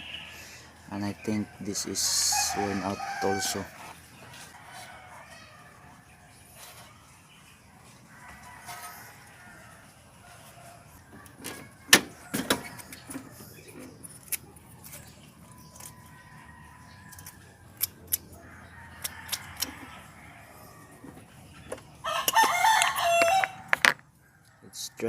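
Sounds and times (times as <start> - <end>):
rooster crowing: 1.3 - 6.2, 8.1 - 13.4, 18.4 - 21.1, 22.0 - 25.0.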